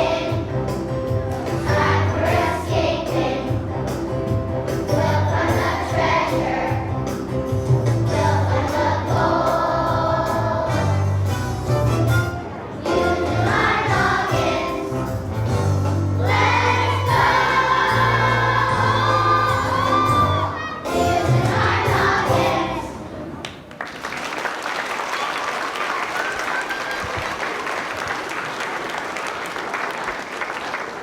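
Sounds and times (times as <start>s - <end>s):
children's choir singing: 0.0s - 11.3s, 12.7s - 23.4s
instrumental accompaniment: 0.0s - 22.8s.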